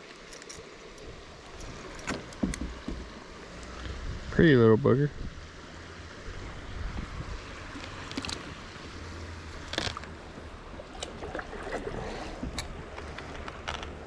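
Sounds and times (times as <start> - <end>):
river water: 0.0 - 14.0
wind: 0.0 - 14.0
knocks and splashes: 1.6 - 3.8, 9.5 - 13.0.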